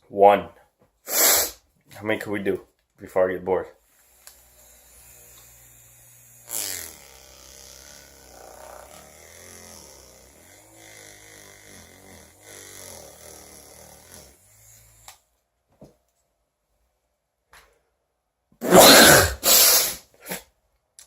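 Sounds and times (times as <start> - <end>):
person sneezing: 1.1 - 1.6, 18.6 - 20.5
handheld fan whirring: 3.8 - 15.2.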